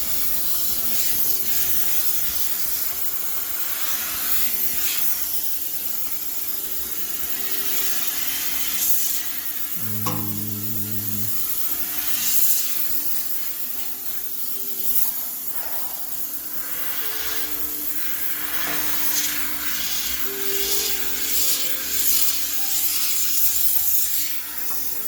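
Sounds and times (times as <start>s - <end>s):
soft background music: 0.2s - 25.0s
steam cleaner hissing: 3.2s - 11.5s, 16.5s - 24.8s.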